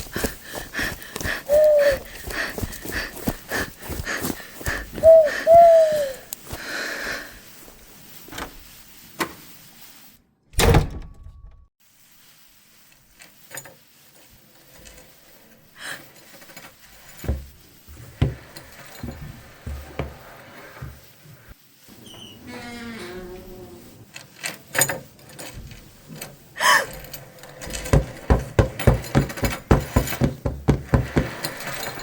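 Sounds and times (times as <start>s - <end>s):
rising-and-falling calls: 1.2s - 2.8s, 4.7s - 6.3s
loud door-like thump: 10.6s - 11.1s
knocks taps and thumps: 27.8s - 31.5s.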